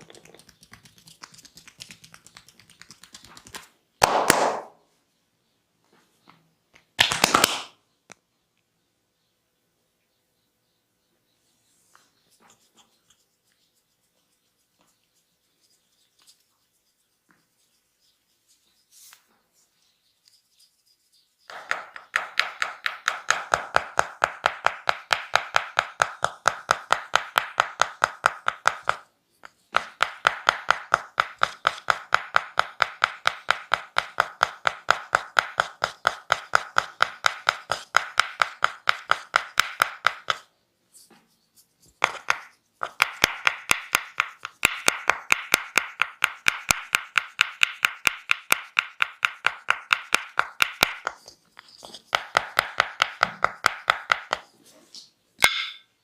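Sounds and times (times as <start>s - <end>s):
hands slapping body: 0.0s - 4.8s, 6.9s - 7.8s, 42.0s - 51.2s.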